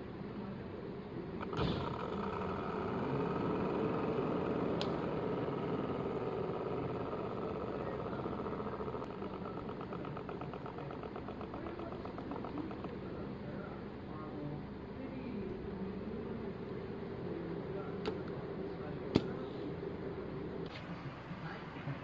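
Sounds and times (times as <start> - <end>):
blower fan motor running: 0.0 - 22.0
click: 4.8 - 5.0.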